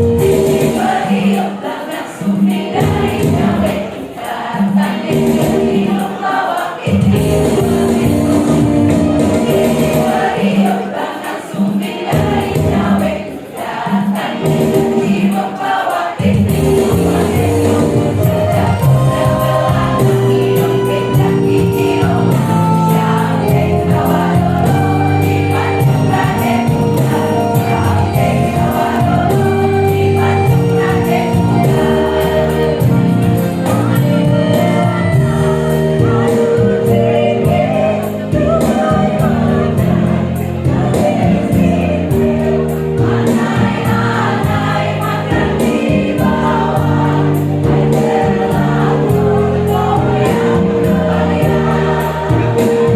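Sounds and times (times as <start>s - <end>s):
women's choir singing: 0.0s - 52.9s
low musical backing: 16.2s - 52.9s.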